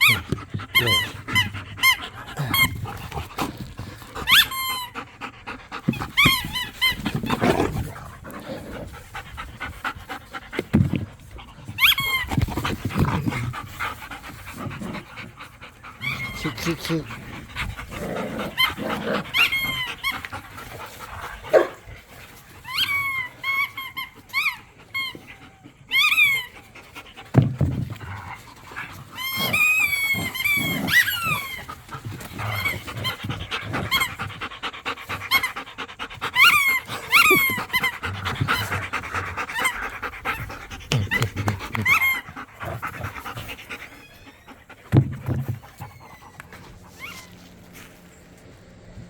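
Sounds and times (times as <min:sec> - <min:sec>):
high-pitched squeaks: 0:00.0 - 0:03.1
dogs panting: 0:00.0 - 0:49.0.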